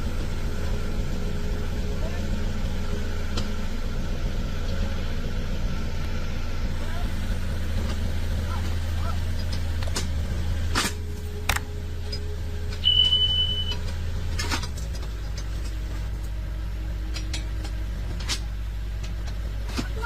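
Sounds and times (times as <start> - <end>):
heavy vehicle engine running: 0.0 - 20.0
short high beep: 12.8 - 13.8.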